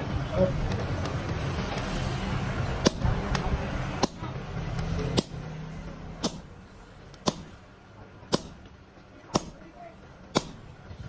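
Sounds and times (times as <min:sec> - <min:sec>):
hammer striking steel: 0:02.8 - 0:03.4, 0:04.0 - 0:10.8.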